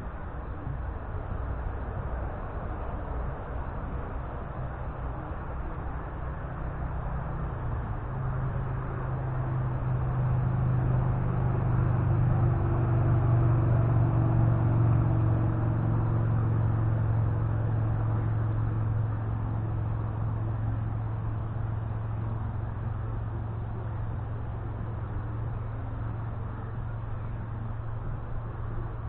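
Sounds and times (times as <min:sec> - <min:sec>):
distant engine drone: 0:06.7 - 0:29.0.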